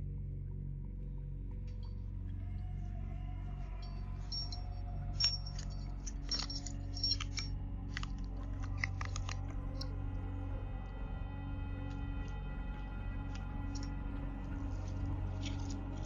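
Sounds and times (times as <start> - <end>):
steady low hum: 0.0 - 16.0
keys jangling: 3.8 - 7.5
keys clicking in door lock: 4.3 - 9.4.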